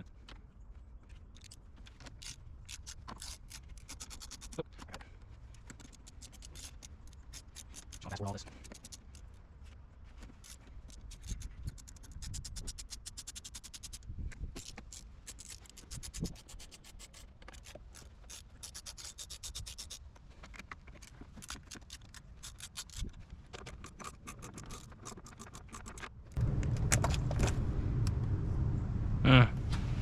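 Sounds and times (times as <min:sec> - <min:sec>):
loud low rumble: 0:26.4 - 0:30.0.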